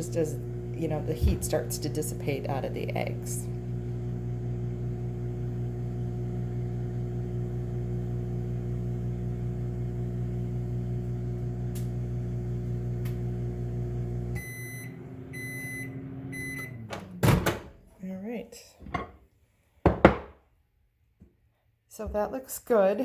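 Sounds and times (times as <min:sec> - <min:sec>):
microwave oven humming: 0:00.0 - 0:17.8
microwave beeps: 0:14.0 - 0:17.7.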